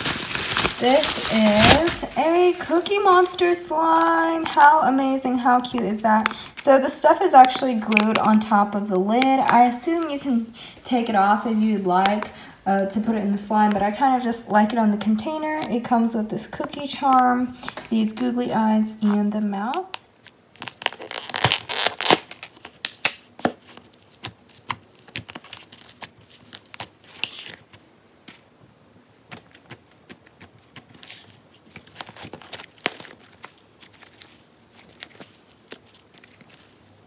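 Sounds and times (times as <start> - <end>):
slime crackling and popping: 0.0 - 4.8, 7.3 - 8.5, 19.7 - 23.5, 29.3 - 36.7.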